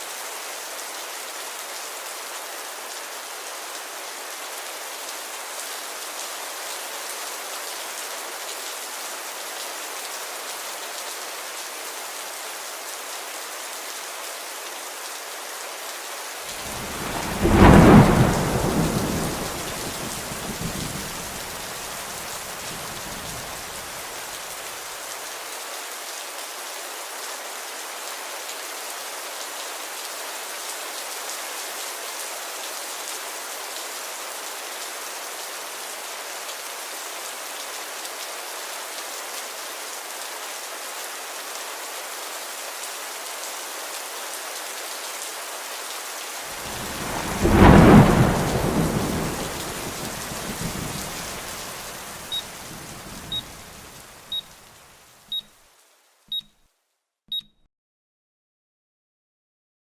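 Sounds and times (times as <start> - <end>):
steady rain: 0.0 - 56.2
thunder clap rumbling: 16.6 - 23.8, 46.6 - 54.0.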